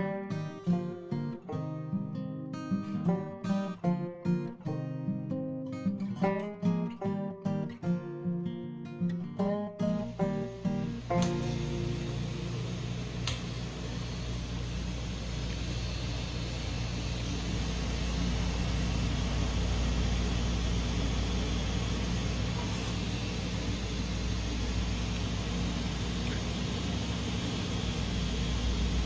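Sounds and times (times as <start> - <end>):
refrigerator fan humming: 9.9 - 29.0
sharp click: 13.2 - 13.6.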